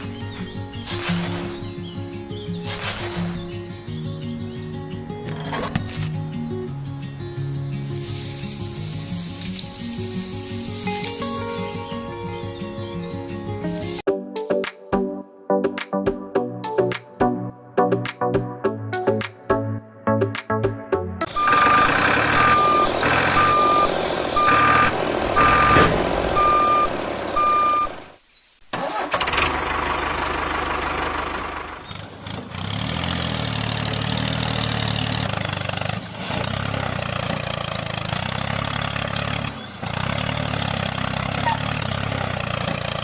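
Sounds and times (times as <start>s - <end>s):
truck engine running: 0.0s - 3.9s, 21.2s - 28.2s, 28.8s - 43.0s
reversing alarm beeping: 21.3s - 28.0s.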